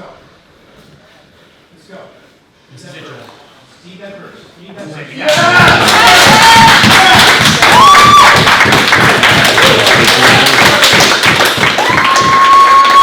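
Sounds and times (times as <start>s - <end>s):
long held shouts: 5.2s - 8.5s, 11.8s - 13.0s
crowd cheering and clapping: 5.2s - 13.0s.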